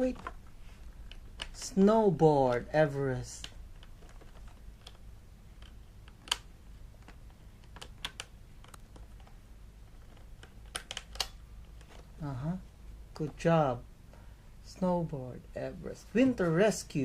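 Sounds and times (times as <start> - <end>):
faint low hum: 0.0 - 17.0
plastic toy parts clicking: 0.1 - 9.4, 10.0 - 12.0.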